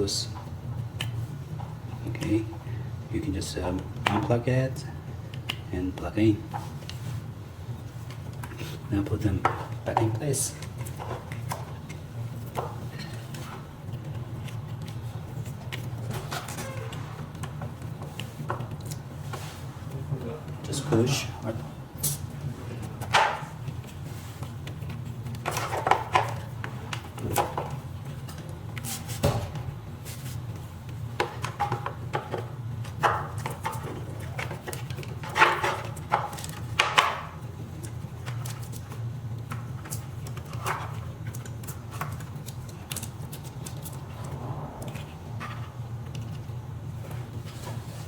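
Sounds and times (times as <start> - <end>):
steady low hum: 0.0 - 48.0
parts and cables knocking and rustling: 7.9 - 20.0, 22.6 - 48.0.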